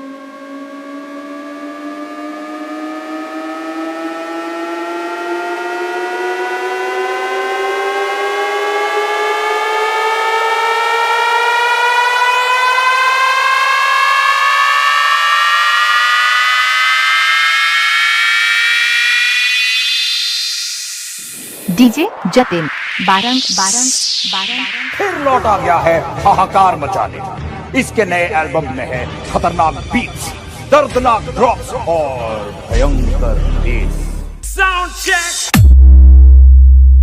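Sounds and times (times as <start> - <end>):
electronic riser tone rising in pitch: 0.0 - 27.8.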